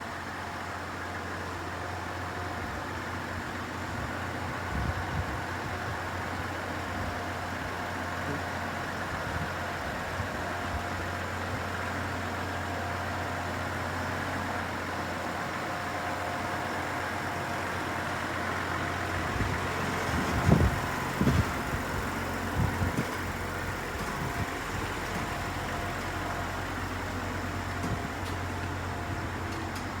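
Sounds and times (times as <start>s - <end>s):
low mechanical hum: 9.0s - 30.0s.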